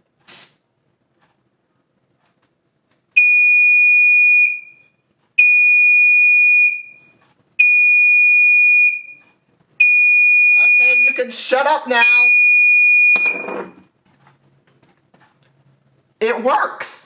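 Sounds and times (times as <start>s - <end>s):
smoke alarm beeps: 3.2s - 11.3s, 12.0s - 13.8s.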